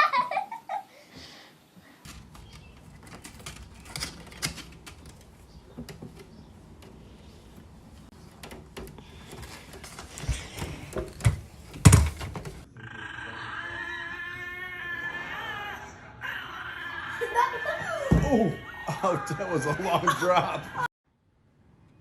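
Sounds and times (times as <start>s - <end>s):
light clicks and knocks: 2.0s - 12.6s
heavy thumps: 2.0s - 12.7s.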